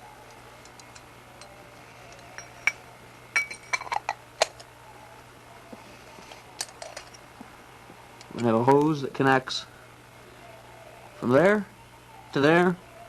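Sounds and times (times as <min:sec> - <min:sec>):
metallic clinks of small parts: 0:00.3 - 0:04.7, 0:06.3 - 0:07.2.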